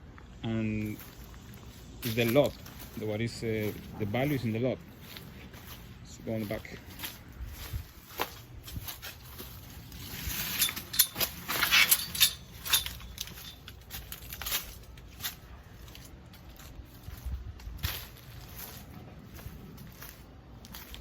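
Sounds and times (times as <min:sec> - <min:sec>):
footsteps crunching and scuffing: 0:00.2 - 0:21.0
clicks and rustles: 0:08.2 - 0:16.8.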